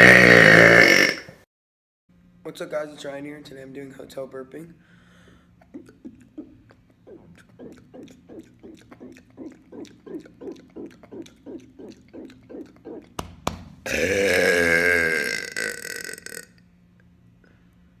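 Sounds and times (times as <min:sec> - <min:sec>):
low steady hum: 0:02.1 - 0:18.0
man gulping: 0:05.6 - 0:16.6.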